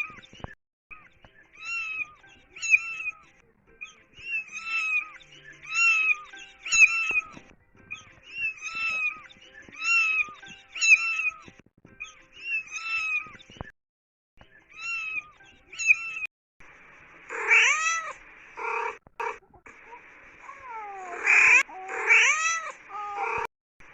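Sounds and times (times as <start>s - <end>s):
kittens mewing: 1.6s - 3.2s, 3.8s - 13.4s, 14.7s - 16.3s, 17.3s - 23.5s
drawn-out meow: 17.3s - 18.1s, 20.8s - 23.5s.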